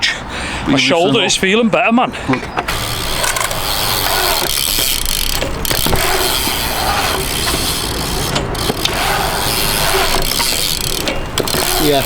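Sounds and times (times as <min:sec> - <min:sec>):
bike tyres rolling: 0:02.4 - 0:12.0.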